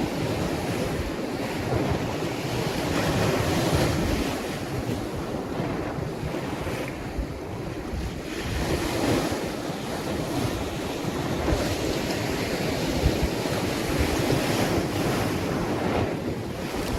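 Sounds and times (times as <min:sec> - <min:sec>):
ocean waves breaking: 0:00.0 - 0:16.9
wind buffeting microphone: 0:00.0 - 0:16.9.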